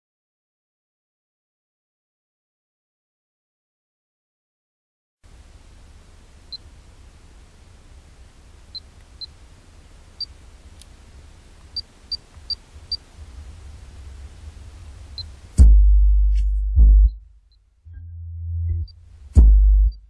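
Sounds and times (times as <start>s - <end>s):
low rumble: 12.1s - 20.0s.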